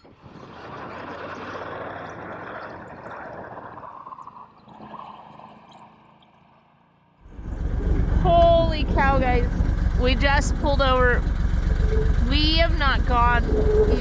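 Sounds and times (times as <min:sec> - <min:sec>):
strong wind blowing: 0:00.0 - 0:04.2, 0:07.3 - 0:14.0.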